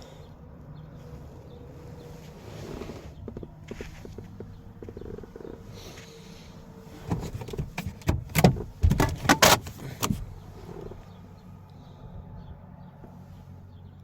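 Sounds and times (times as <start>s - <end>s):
sharp clicks and knocks: 7.1s - 10.2s.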